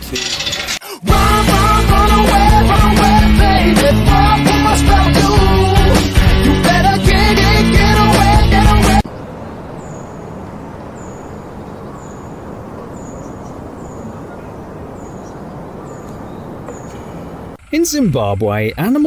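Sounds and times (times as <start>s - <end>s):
rock music: 1.1s - 9.0s
steady outdoor hiss: 1.1s - 19.0s
bird chirping: 7.8s - 17.6s.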